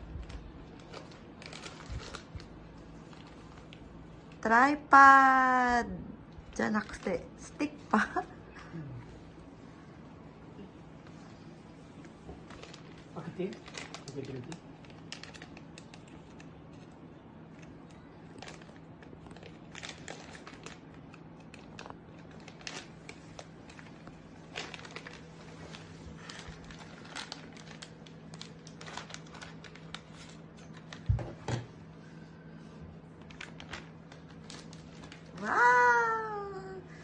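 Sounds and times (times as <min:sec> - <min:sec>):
packaging crinkling and tearing: 0:00.0 - 0:04.4, 0:12.4 - 0:31.2, 0:33.1 - 0:36.8
faint steady hum: 0:00.0 - 0:37.0.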